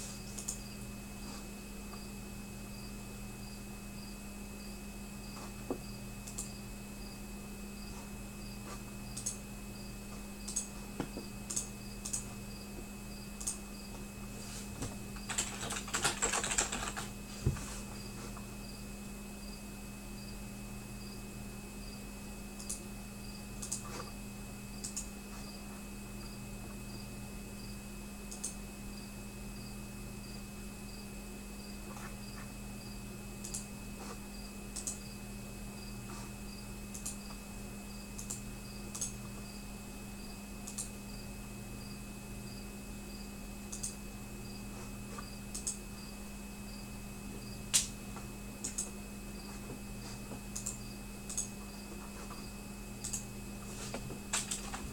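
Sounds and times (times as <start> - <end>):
low electrical hum: 0.0 - 54.9
high cricket-like chirp: 0.3 - 0.9, 2.0 - 14.0, 18.0 - 20.4, 21.0 - 23.8, 26.2 - 33.7, 34.3 - 47.9, 50.6 - 53.3
sharp clicks: 6.2 - 6.6, 9.1 - 9.4, 10.4 - 10.7, 11.5 - 12.3, 13.4 - 13.6, 22.6 - 22.8, 23.6 - 23.9, 24.8 - 25.1, 28.3 - 28.6, 33.4 - 33.7, 34.8 - 35.0, 36.9 - 37.4, 38.2 - 39.2, 40.6 - 40.9, 43.7 - 44.0, 45.5 - 45.8, 47.7 - 47.9, 48.6 - 48.9, 50.6 - 51.5, 53.0 - 53.3.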